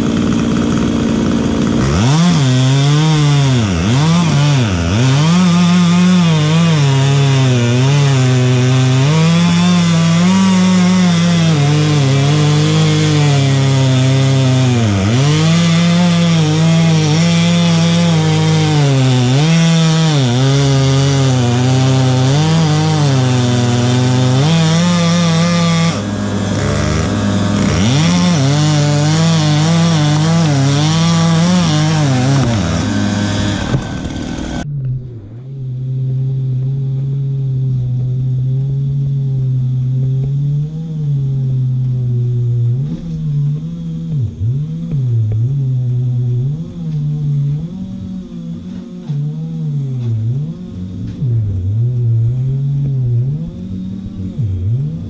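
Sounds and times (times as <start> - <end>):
chainsaw cutting wood: 0.0 - 55.0.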